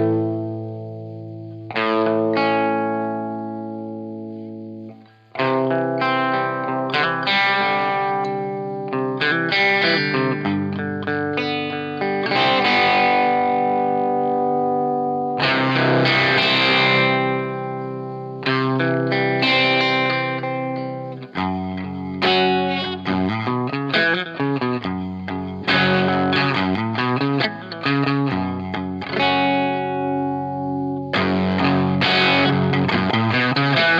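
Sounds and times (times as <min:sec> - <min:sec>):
fuzzed electric guitar chords: 0:00.0 - 0:33.9.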